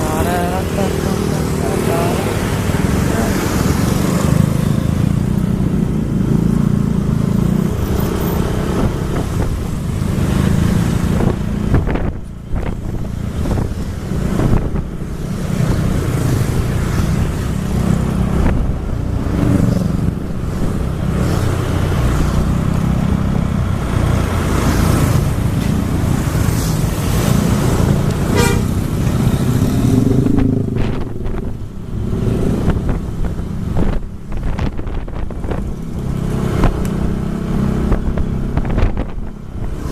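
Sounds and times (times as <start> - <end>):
motorcycle engine and road rumble: 0.0 - 39.9
wind on microphone: 7.8 - 21.2, 23.0 - 39.9
vehicle horns tooting: 28.3 - 28.8.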